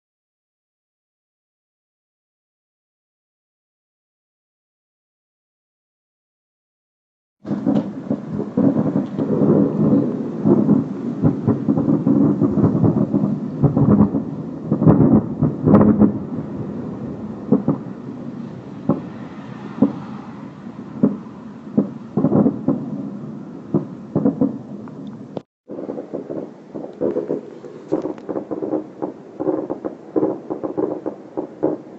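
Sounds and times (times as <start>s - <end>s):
low booms and thuds: 7.4s - 20.2s, 21.0s - 31.9s
continuous rumble: 7.4s - 31.9s.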